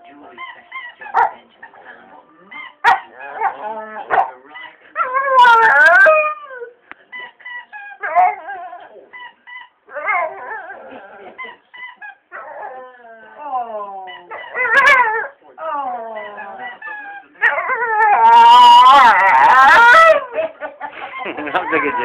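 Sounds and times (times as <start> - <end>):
faint television audio: 0.0 - 22.0
dog howling and whimpering: 2.5 - 4.2, 5.0 - 6.8, 7.6 - 9.2, 9.9 - 20.4, 21.5 - 22.0.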